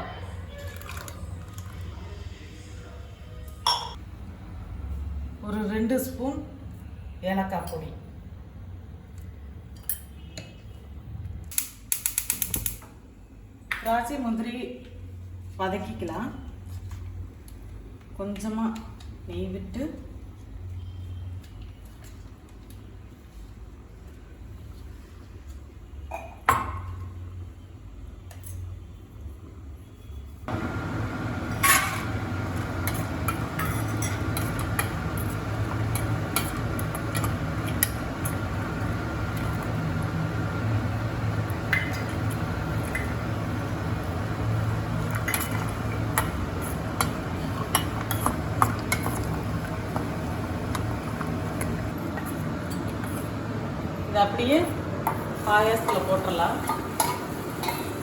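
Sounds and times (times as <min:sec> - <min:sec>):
spoon clinking and scraping metal: 0:32.8 - 0:37.9.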